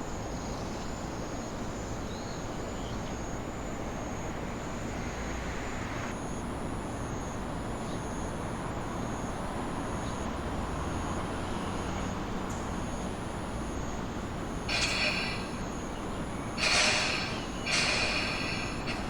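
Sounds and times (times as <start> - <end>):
vehicle rumble: 8.7 - 19.0
thin high steady tone: 14.7 - 19.0.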